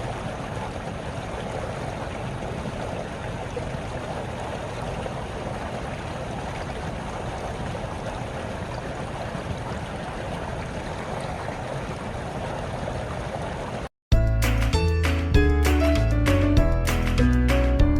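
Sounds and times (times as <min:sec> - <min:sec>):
creek babbling over stones: 0:00.0 - 0:13.9
music with heavy bass: 0:14.1 - 0:17.9.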